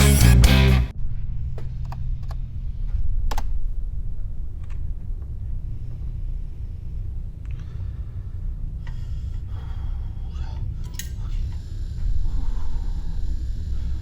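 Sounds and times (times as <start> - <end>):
rock music: 0.0 - 0.9
steady low hum: 0.0 - 14.0.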